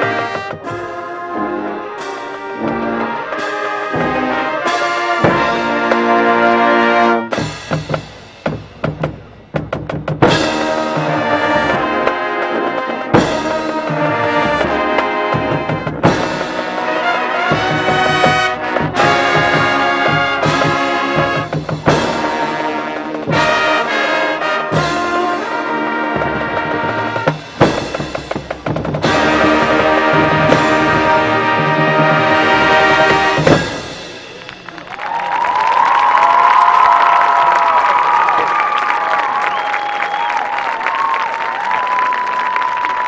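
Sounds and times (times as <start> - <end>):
drum hits: 0.0 - 1.0, 5.1 - 6.4, 7.3 - 23.9, 26.1 - 34.9
marching band brass chords: 0.0 - 43.0.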